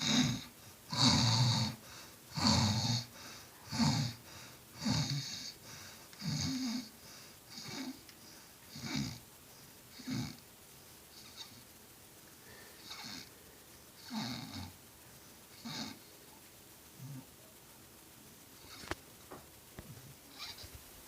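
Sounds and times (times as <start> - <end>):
harsh rasping snoring: 0.0 - 5.6, 6.2 - 6.9, 7.5 - 8.0, 8.7 - 9.2, 9.9 - 10.4, 11.2 - 11.6, 12.8 - 13.3, 14.0 - 14.8, 15.5 - 16.1.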